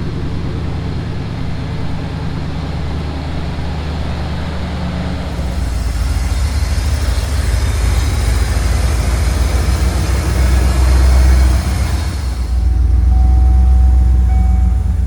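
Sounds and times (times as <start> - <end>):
truck engine running: 0.0 - 15.0.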